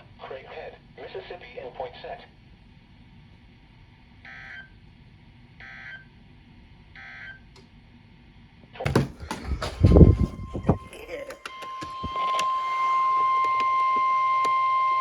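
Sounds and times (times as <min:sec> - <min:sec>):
loud thump and clatter: 0:08.9 - 0:10.8.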